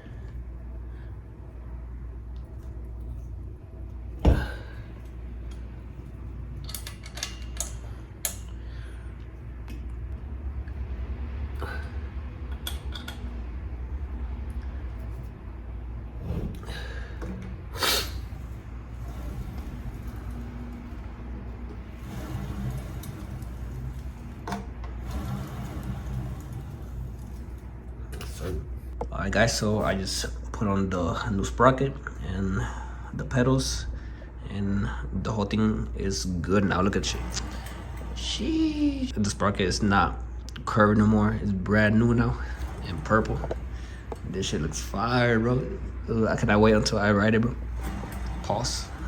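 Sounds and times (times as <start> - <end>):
steady low hum: 0.0 - 49.0
bike parts clicking and clinking: 6.6 - 8.5.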